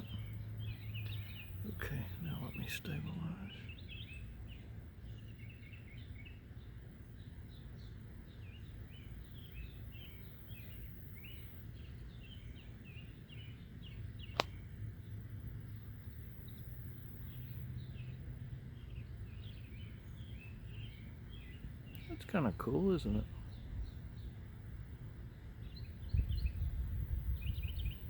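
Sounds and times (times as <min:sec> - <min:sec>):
low outdoor rumble: 0:00.0 - 0:28.0
small birds chirping: 0:00.0 - 0:28.0
sharp click: 0:14.3 - 0:14.6.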